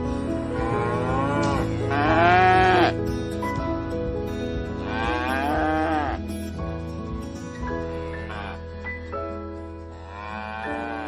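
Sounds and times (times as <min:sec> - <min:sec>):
background music: 0:00.0 - 0:11.0
cattle mooing: 0:00.6 - 0:02.9, 0:04.9 - 0:06.3, 0:08.2 - 0:08.6, 0:10.0 - 0:11.0.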